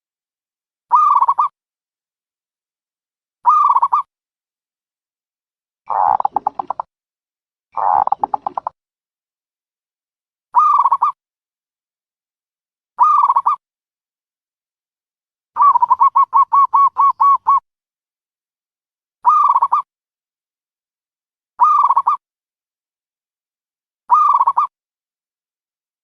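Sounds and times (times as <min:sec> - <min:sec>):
dove cooing: 0:05.9 - 0:06.8, 0:07.8 - 0:08.7, 0:15.6 - 0:17.6.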